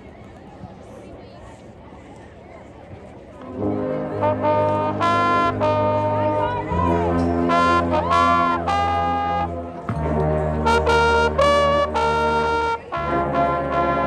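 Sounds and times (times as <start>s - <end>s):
marching band brass chords: 3.4s - 14.0s
low bass line: 3.6s - 14.0s.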